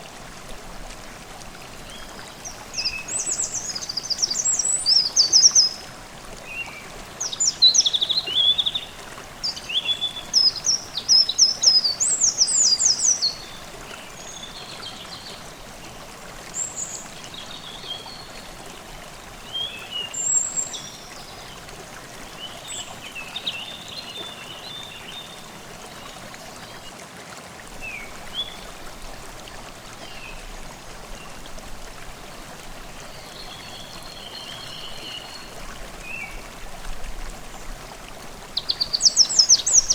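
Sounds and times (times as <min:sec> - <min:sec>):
stream babbling over stones: 0:00.0 - 0:39.9
songbirds singing: 0:01.8 - 0:18.4, 0:19.2 - 0:26.9, 0:33.0 - 0:36.5, 0:38.5 - 0:39.9.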